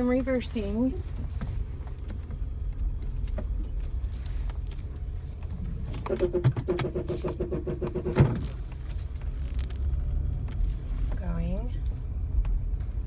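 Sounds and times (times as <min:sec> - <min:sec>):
car low rumble: 0:00.0 - 0:13.0
pulsing brake groan: 0:04.2 - 0:11.9.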